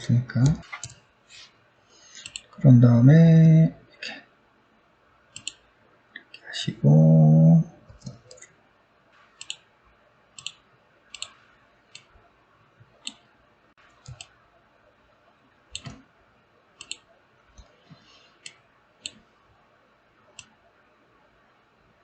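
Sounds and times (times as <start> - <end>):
computer mouse clicking: 0.4 - 1.0, 2.2 - 2.6, 5.4 - 5.6, 9.4 - 9.7, 10.4 - 12.1, 13.0 - 14.4, 15.7 - 16.0, 16.8 - 19.3, 20.3 - 20.6.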